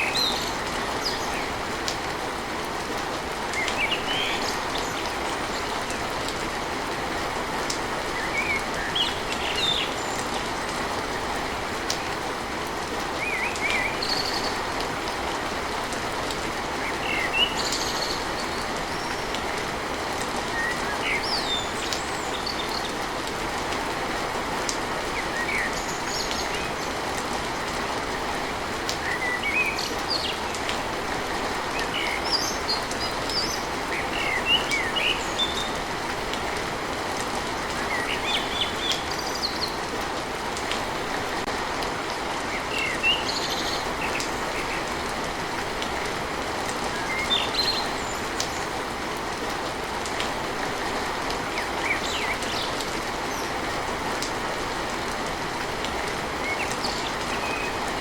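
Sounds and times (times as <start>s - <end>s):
rain on a tin roof: 0.0s - 58.0s
birds chirping: 28.4s - 40.0s.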